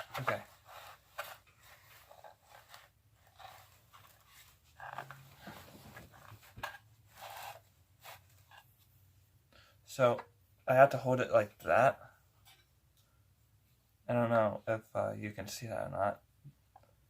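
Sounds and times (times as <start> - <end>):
rustling of small parts: 0.0 - 8.9.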